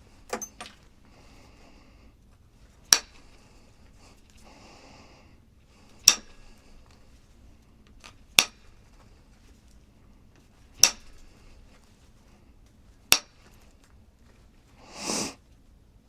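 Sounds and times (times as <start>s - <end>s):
hammer striking stone: 0.3s - 0.8s.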